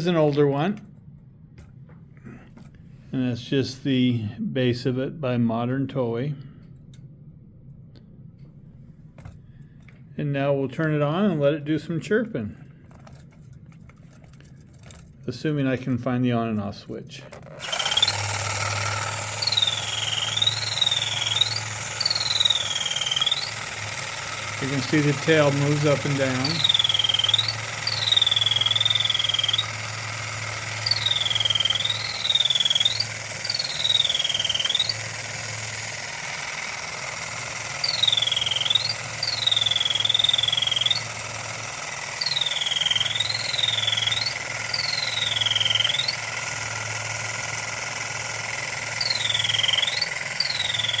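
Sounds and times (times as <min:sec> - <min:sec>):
low mechanical hum: 0:00.0 - 0:51.0
toy bird chirping tweets: 0:17.6 - 0:51.0.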